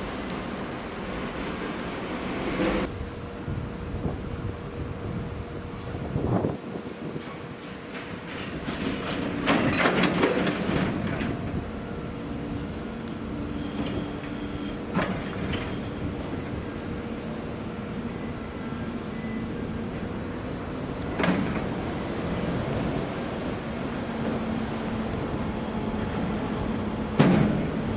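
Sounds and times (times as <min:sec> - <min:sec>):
freight train rolling on rails: 0:00.0 - 0:27.9
metallic squeals and clanks: 0:13.5 - 0:16.2.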